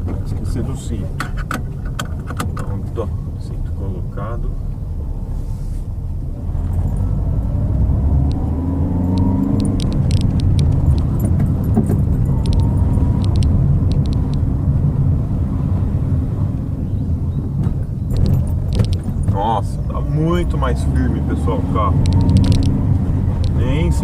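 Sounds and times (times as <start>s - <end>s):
sharp clicks and rattles: 0.0s - 3.1s, 8.2s - 14.5s, 17.6s - 20.5s, 21.8s - 24.0s
car engine and road rumble: 0.0s - 24.0s.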